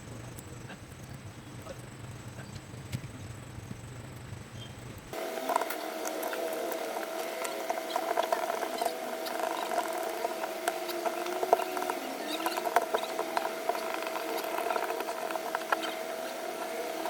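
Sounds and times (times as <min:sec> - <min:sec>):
electric drill motor running: 0:05.2 - 0:17.0.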